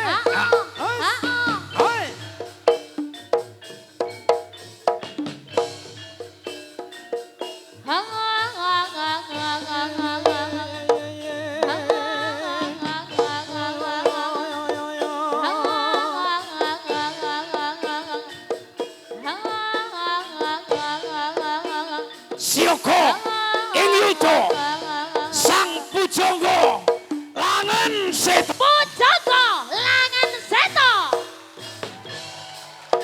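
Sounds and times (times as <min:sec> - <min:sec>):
hand drum strokes: 0:00.0 - 0:33.0.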